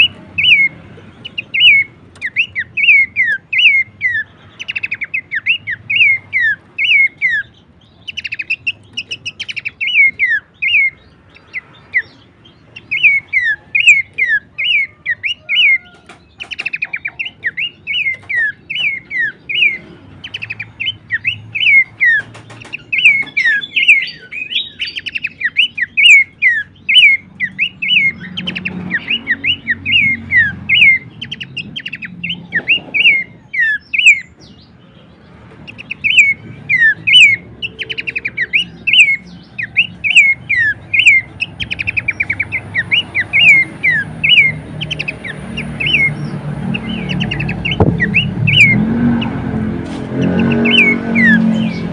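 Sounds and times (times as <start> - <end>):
bird calling falling notes: 12.8 - 34.6, 35.6 - 51.9.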